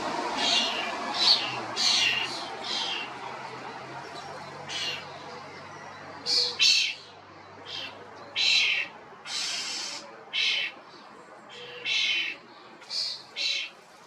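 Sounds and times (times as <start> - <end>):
starling harsh calls: 0.0 - 5.3, 6.2 - 10.8, 11.5 - 13.8.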